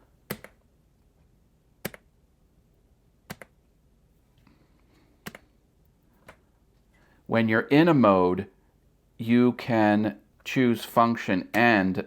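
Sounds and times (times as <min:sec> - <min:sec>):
keyboard keys clicking: 0:03.3 - 0:03.6.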